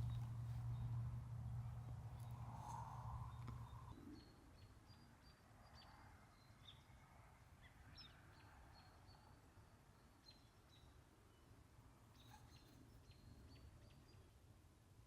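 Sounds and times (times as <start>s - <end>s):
small birds chirping: 0.0s - 6.9s.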